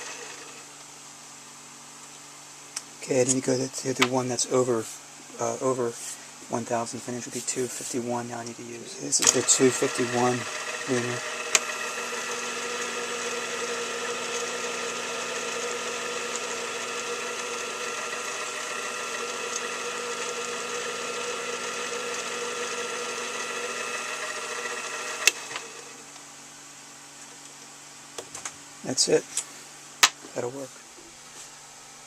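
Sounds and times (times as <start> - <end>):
machine tool spindle running: 0.0 - 0.6, 9.2 - 26.0.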